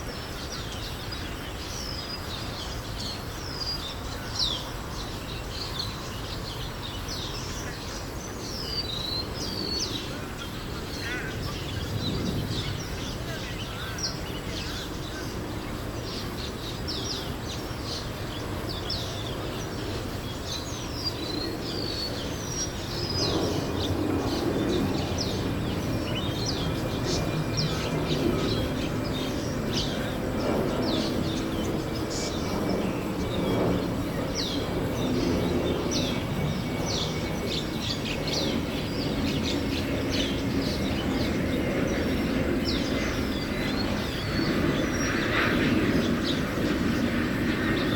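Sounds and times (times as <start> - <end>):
small birds chirping: 0.2 - 47.9.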